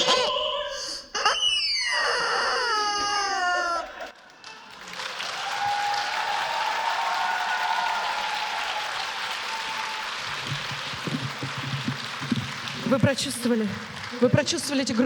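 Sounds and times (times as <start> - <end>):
long held voice-like cries: 0.0 - 4.1
audience applauding: 3.6 - 15.0.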